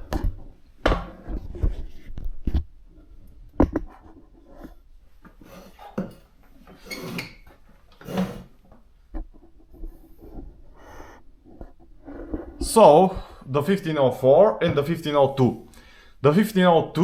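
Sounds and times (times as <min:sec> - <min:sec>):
scraping or rustling: 0:03.7 - 0:12.7.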